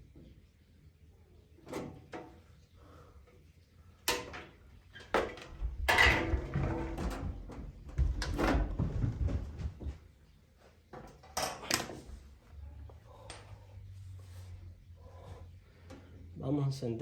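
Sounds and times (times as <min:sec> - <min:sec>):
knocks clicks and clatter: 0:04.1 - 0:09.8.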